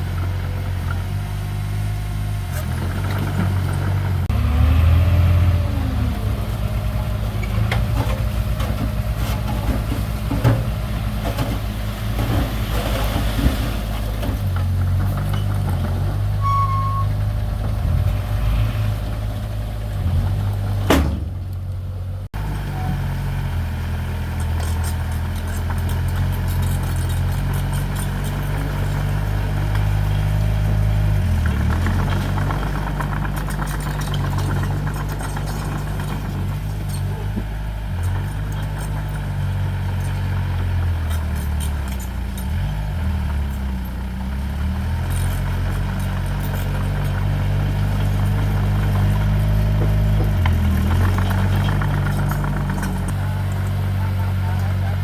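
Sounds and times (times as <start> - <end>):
heavy machinery diesel engine: 0.0 - 55.0
clanks and knocks: 7.4 - 18.2, 31.4 - 40.2.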